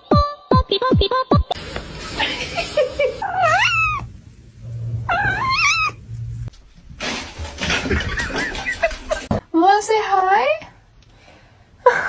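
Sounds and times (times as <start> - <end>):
cat meowing: 3.2 - 4.1, 5.1 - 6.0.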